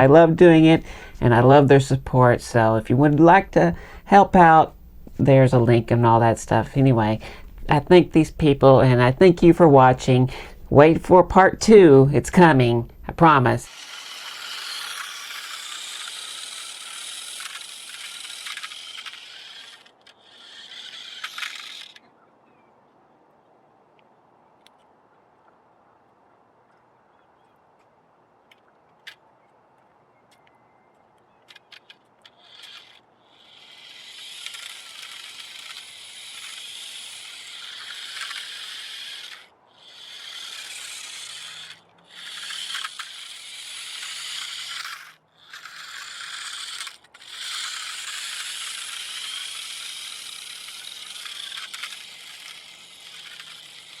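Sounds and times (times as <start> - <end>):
toy truck motor and gears rattling: 0.0 - 22.1, 28.5 - 29.2, 31.3 - 54.0.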